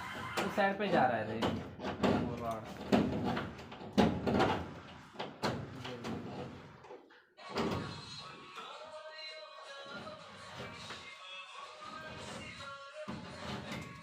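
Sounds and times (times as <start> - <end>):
sharp knocks and clatter: 1.0 - 7.0.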